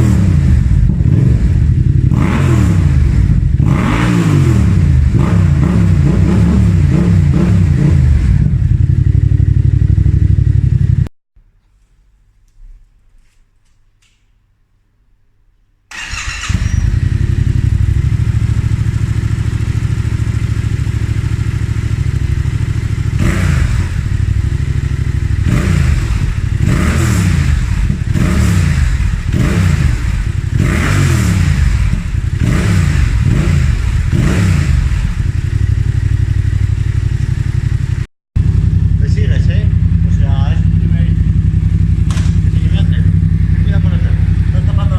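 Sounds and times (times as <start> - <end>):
motorcycle engine idling and revving: 0.0 - 11.1, 15.9 - 44.9.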